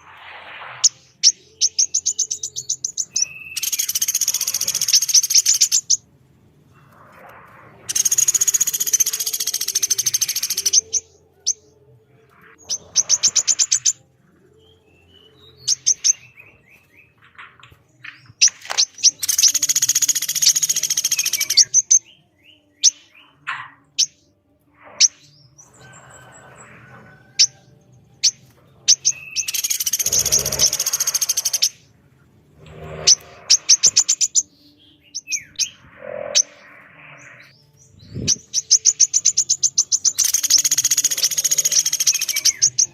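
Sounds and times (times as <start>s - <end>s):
harsh rasping bird calls: 0.8s - 6.0s, 6.8s - 11.1s, 28.2s - 31.9s, 32.6s - 42.9s
rattling bird trills: 28.9s - 31.8s.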